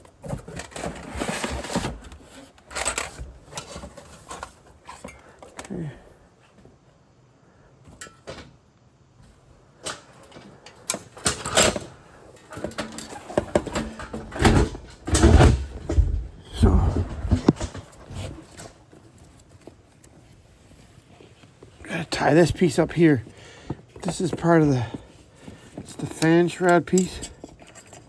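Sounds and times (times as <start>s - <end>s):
engine parts being handled: 9.8s - 21.8s, 22.5s - 28.0s.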